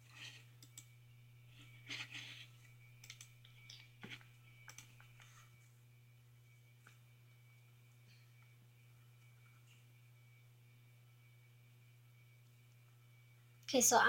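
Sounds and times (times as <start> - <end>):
low steady hum: 0.0 - 14.0
faint clicks: 0.6 - 0.9.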